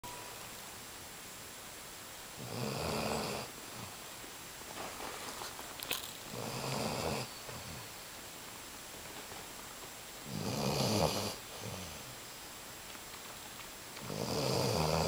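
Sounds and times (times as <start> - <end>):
dog snoring: 2.4 - 4.0, 6.3 - 7.9, 10.2 - 12.1, 14.0 - 15.0.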